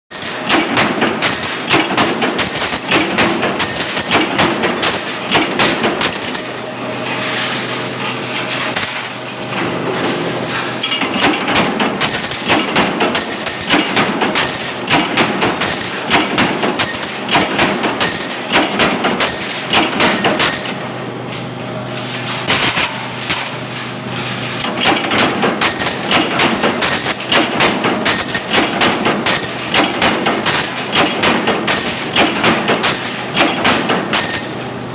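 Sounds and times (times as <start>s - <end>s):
steady machine hum: 0.2s - 34.9s.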